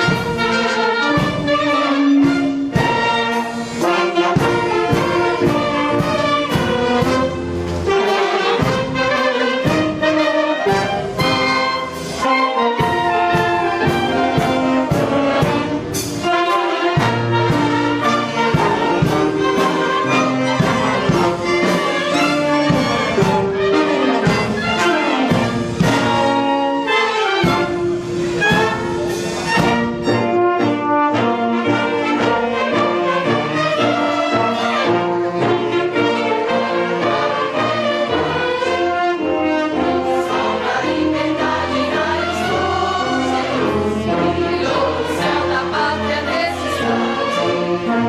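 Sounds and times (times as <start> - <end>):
orchestra playing an anthem: 0.0 - 48.0
trumpets and trombones: 0.0 - 48.0.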